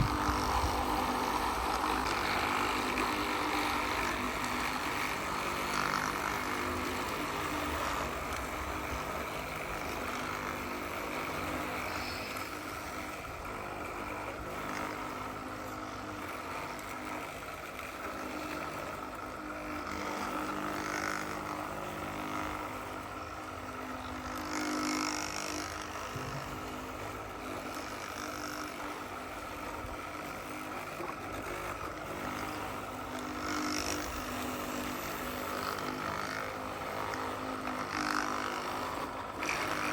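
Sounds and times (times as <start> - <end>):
model vehicles running: 0.0 - 39.9.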